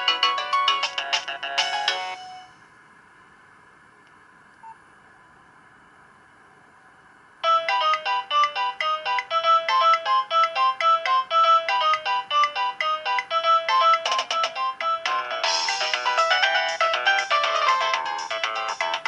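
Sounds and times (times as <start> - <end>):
synthesized ringtone tune: 0.0 - 2.6, 7.4 - 19.0.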